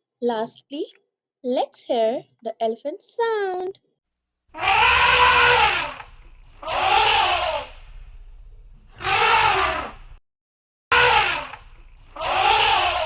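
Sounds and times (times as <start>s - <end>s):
elephant trumpeting: 4.6s - 10.2s, 10.9s - 13.0s.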